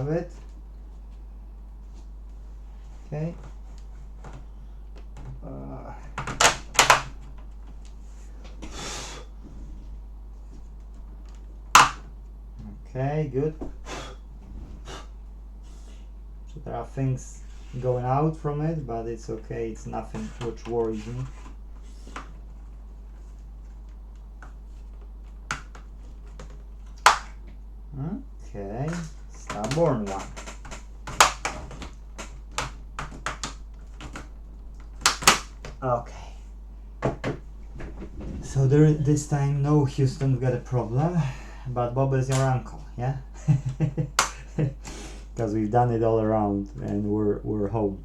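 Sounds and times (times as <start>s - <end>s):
low steady hum: 0.0s - 48.0s
sharp plastic clicks: 6.2s - 8.0s, 11.2s - 12.1s, 25.5s - 27.5s, 28.9s - 35.8s
scraping rustle: 14.4s - 16.1s, 19.9s - 23.9s, 37.4s - 40.3s.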